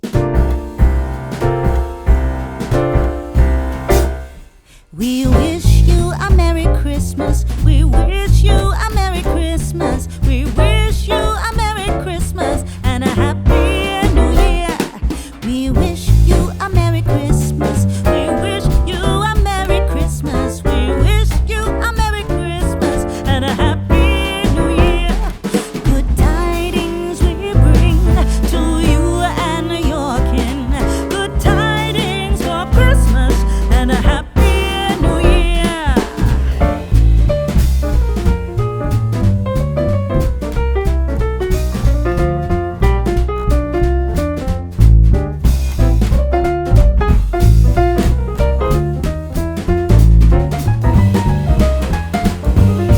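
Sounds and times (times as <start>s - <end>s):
strong bass line: 0.0s - 4.5s, 5.3s - 14.7s, 15.7s - 52.9s
drums: 0.0s - 52.9s
song with singing voice: 4.9s - 5.9s, 10.5s - 21.5s, 22.6s - 36.9s.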